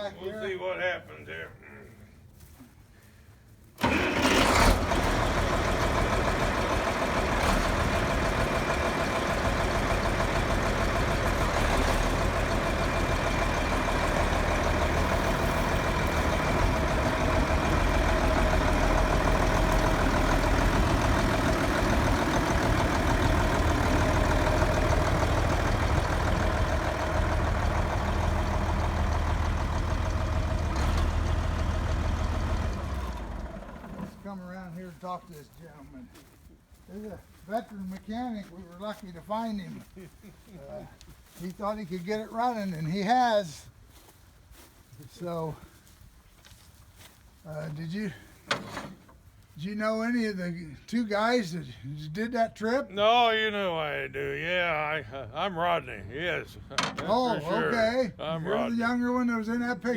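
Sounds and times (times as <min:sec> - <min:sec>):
tractor engine starting up: 0:03.8 - 0:34.5, 0:48.3 - 0:49.2, 0:56.6 - 0:57.4.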